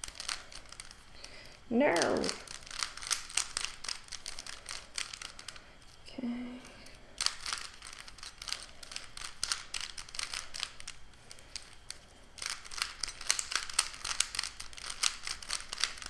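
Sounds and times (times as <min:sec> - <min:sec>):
puzzle cube plastic clicks: 0:00.0 - 0:05.6, 0:06.6 - 0:16.0.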